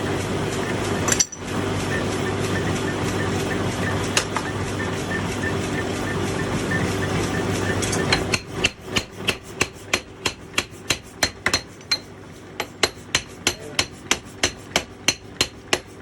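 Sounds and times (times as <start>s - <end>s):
machine hum: 0.0s - 13.8s
hammer striking metal: 1.1s - 1.4s, 7.9s - 15.9s.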